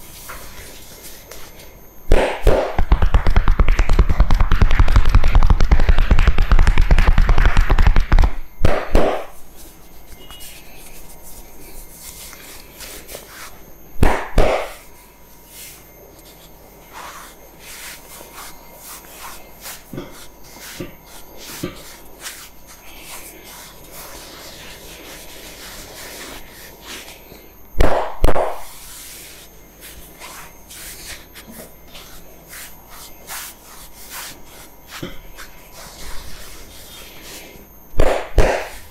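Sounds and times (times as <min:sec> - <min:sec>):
fast hand taps: 0:02.5 - 0:08.4
hands rubbing skin and hair: 0:09.5 - 0:13.6, 0:15.5 - 0:27.2, 0:28.8 - 0:37.6.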